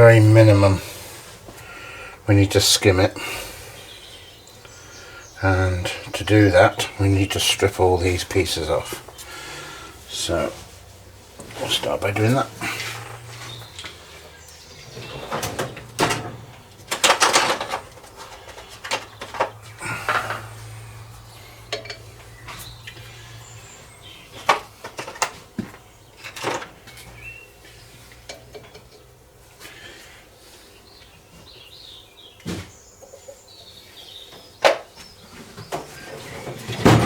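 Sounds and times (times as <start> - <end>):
metal tools clinking and knocking: 14.9 - 20.8, 21.6 - 22.6.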